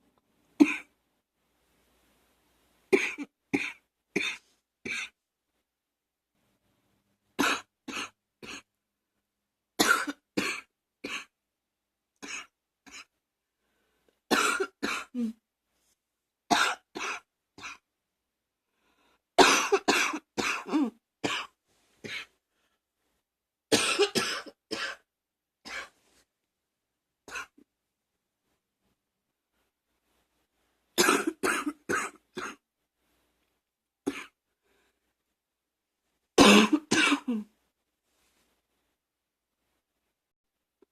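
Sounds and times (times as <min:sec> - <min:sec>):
person coughing: 0:00.6 - 0:00.9, 0:03.0 - 0:05.2, 0:09.8 - 0:11.3, 0:14.3 - 0:15.4, 0:19.4 - 0:22.3, 0:23.7 - 0:25.1, 0:31.0 - 0:32.6, 0:36.4 - 0:37.5.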